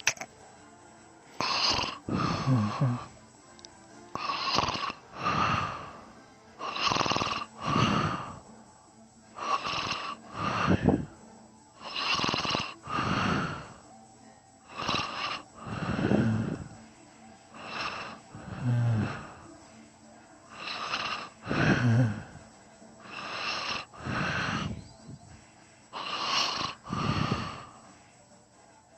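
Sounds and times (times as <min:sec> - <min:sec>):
person snoring: 0:01.4 - 0:03.2, 0:04.2 - 0:06.0, 0:06.6 - 0:08.4, 0:09.4 - 0:11.1, 0:11.8 - 0:13.8, 0:14.7 - 0:16.8, 0:17.6 - 0:19.5, 0:20.5 - 0:22.4, 0:23.0 - 0:25.3, 0:26.0 - 0:27.9.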